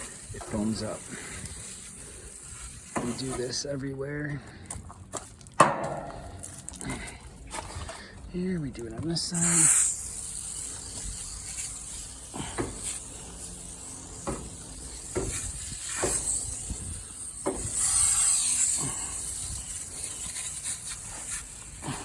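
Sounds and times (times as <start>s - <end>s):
aerosol can spraying: 0.0s - 3.6s, 9.3s - 22.0s.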